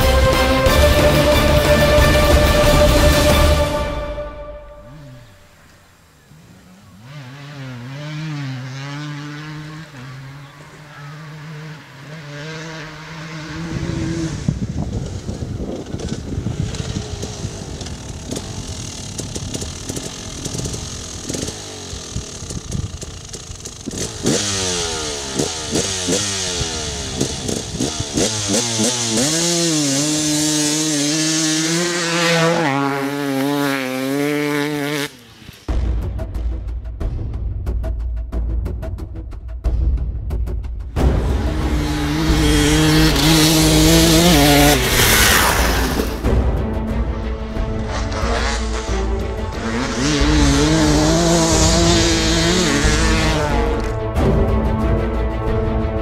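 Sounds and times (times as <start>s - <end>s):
two-stroke engine idling and revving: 6.0s - 35.8s, 40.9s - 54.8s.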